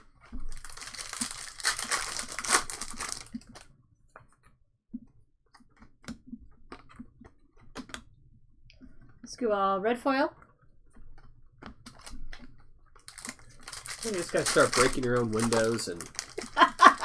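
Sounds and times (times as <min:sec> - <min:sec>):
card pack wrapper tearing and crinkling: 0:00.5 - 0:03.7, 0:13.0 - 0:17.0.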